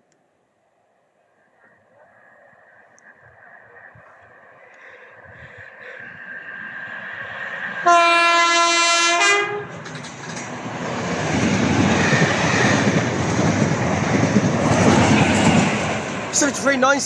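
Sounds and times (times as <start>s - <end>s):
train rumbling: 2.0s - 17.0s
train horn blast: 7.8s - 9.8s.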